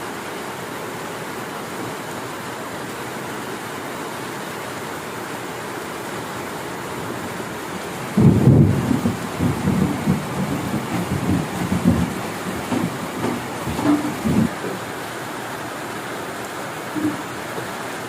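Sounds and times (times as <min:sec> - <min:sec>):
heavy rain hissing: 0:00.0 - 0:18.0
low rumble of thunder: 0:08.1 - 0:14.5.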